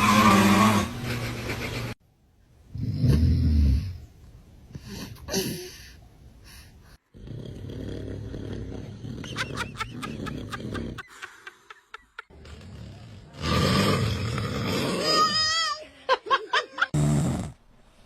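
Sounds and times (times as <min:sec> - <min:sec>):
man snoring loudly: 0:12.5 - 0:15.3.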